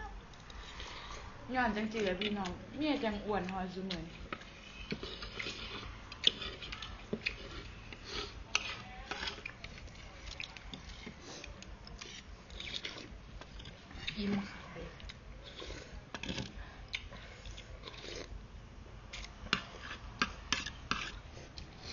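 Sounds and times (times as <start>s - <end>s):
liquid slurping: 4.3s - 18.3s.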